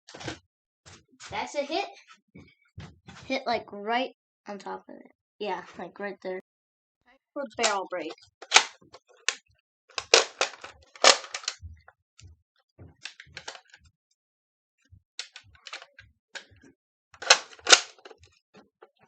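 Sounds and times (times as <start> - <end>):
toy blaster clicking and clacking: 7.6 - 8.7, 10.0 - 11.6, 15.2 - 15.9, 17.2 - 18.1
toy blaster firing snaps: 8.4 - 8.7, 10.0 - 11.6, 17.2 - 18.1.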